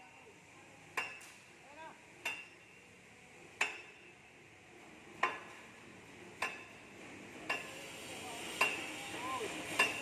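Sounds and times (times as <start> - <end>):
hammer striking steel: 0.9 - 1.4, 2.2 - 2.8, 3.6 - 4.2, 5.2 - 5.7, 6.4 - 6.8, 7.4 - 10.0.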